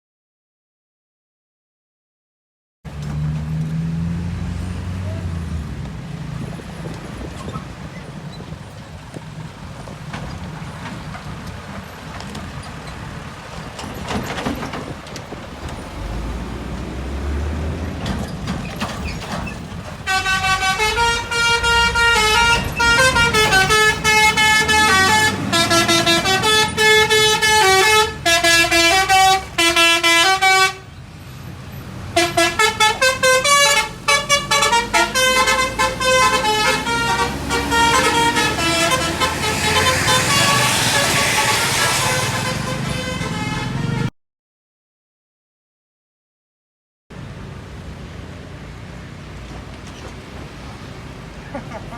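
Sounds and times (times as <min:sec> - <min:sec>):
bus engine rumble: 0:02.9 - 0:44.1, 0:47.2 - 0:51.9
musical air horn tune: 0:20.1 - 0:30.9, 0:32.2 - 0:44.1.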